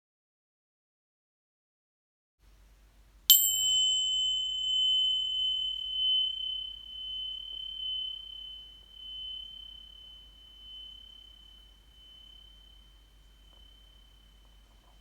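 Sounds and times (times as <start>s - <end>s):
metal singing bowl ringing: 3.3s - 15.0s.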